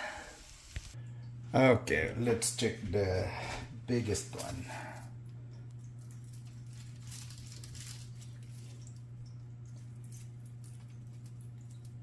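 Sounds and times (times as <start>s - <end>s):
low hum: 0.0s - 12.0s.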